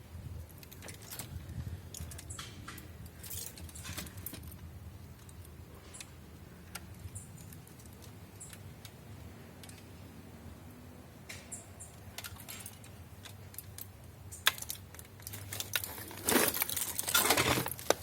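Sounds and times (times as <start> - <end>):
light clicks and rattles: 11.3 - 18.0.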